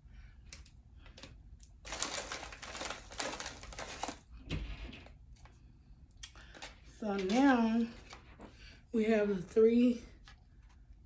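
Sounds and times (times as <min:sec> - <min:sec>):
plastic bag crinkling: 0:01.6 - 0:04.4.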